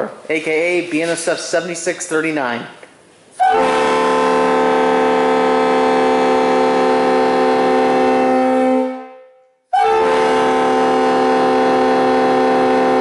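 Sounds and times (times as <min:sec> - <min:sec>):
train horn chord: 0:03.4 - 0:13.0.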